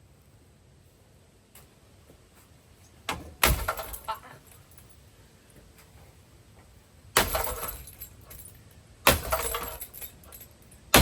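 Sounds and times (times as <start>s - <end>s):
ceiling fan smashing: 3.4s - 4.2s, 7.1s - 8.4s, 9.0s - 11.0s
rattle of breaking parts: 3.4s - 5.0s, 7.2s - 11.0s.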